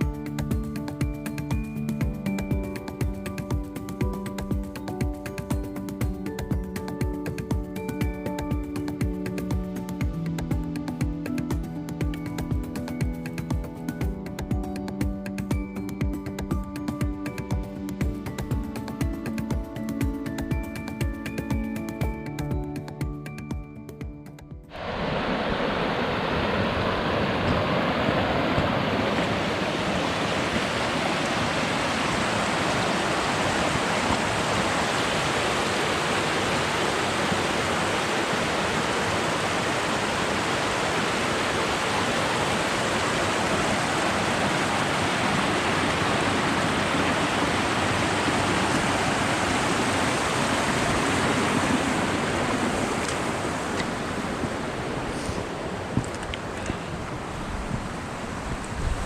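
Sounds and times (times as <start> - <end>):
mountain stream rushing: 24.7 - 59.0.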